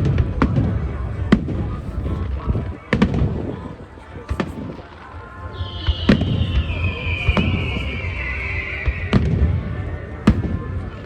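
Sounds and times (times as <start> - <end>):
falling firework whistle: 5.5 - 10.5
low rumble: 5.6 - 11.0.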